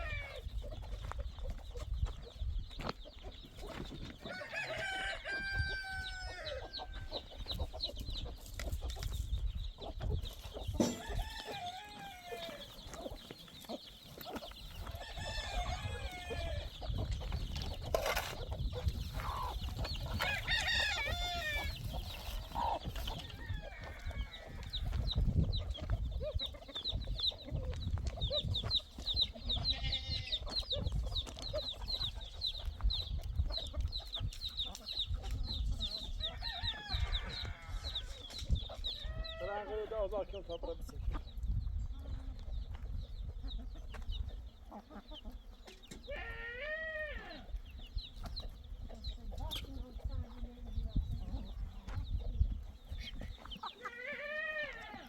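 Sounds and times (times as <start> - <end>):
chickens clucking: 0.0 - 55.0
rooster crowing: 4.3 - 6.8, 10.8 - 12.7, 15.0 - 16.7, 36.3 - 38.1.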